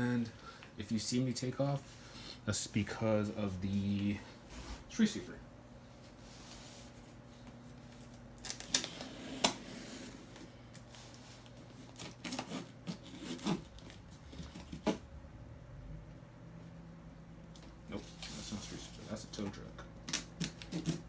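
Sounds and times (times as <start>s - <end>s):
scissors snipping cardboard: 12.0s - 15.0s, 20.0s - 21.0s.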